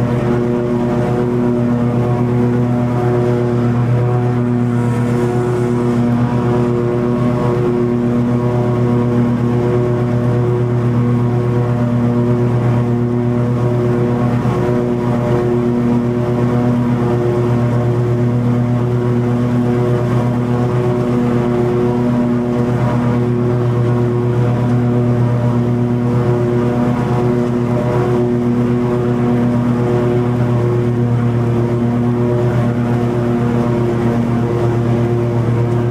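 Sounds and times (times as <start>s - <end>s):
ride-on mower engine: 0.0s - 35.9s
grass cutting rushing hiss: 2.2s - 8.9s.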